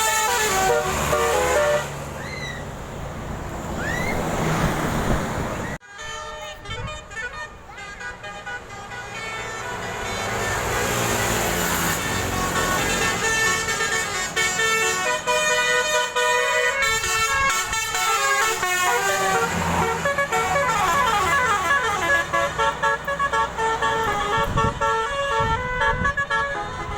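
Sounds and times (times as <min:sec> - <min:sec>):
multi-tone bus horn tune: 0:00.0 - 0:02.2, 0:05.6 - 0:26.9
bus engine rumbling: 0:00.0 - 0:26.9.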